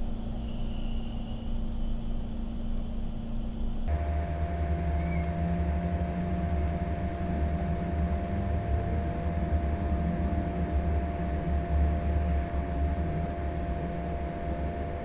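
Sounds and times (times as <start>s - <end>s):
low machine hum: 0.0s - 15.0s
machine whine: 3.9s - 15.0s.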